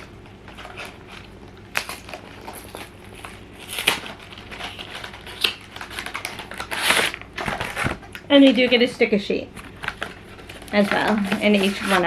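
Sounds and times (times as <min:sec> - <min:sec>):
cardboard box tearing open: 0:01.8 - 0:08.0.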